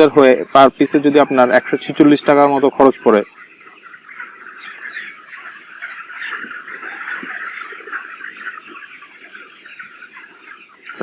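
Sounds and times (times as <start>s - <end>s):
flock of chickens clucking: 0.0s - 11.0s.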